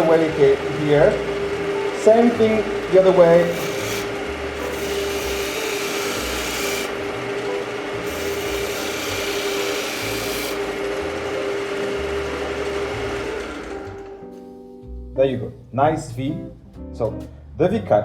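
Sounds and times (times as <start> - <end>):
wood lathe humming: 0.0 - 14.1
chisel cutting wood hiss: 3.1 - 7.2, 8.0 - 10.8.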